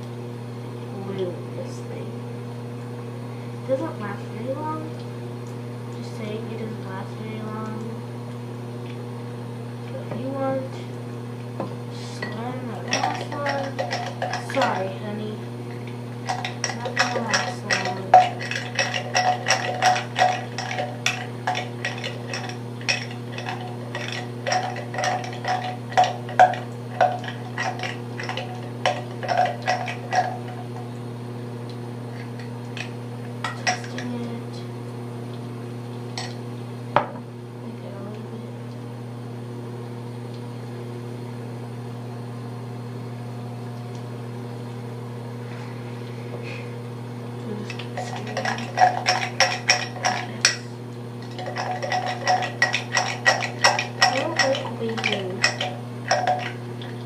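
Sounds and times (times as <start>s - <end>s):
steady low hum: 0.0s - 57.0s
utensil tapping container stirring slime: 51.5s - 56.6s.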